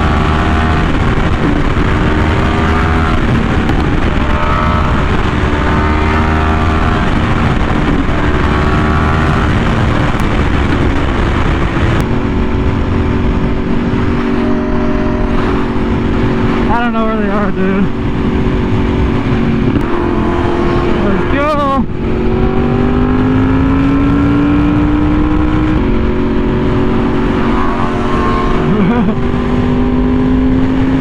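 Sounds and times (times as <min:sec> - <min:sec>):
motorcycle engine accelerating: 0:00.0 - 0:31.0
wind rushing: 0:00.0 - 0:31.0.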